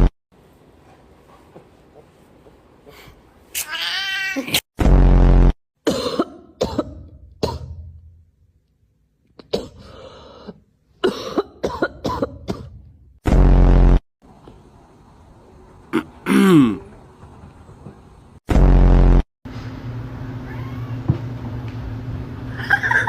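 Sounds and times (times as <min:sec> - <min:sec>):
cat meowing: 0:03.6 - 0:04.5.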